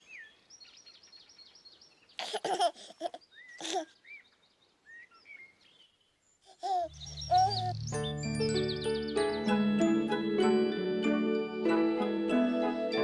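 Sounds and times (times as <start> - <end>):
baby giggling: 2.2 - 3.9, 6.5 - 7.8
birds chirping and whistling: 3.2 - 5.9, 6.9 - 9.6.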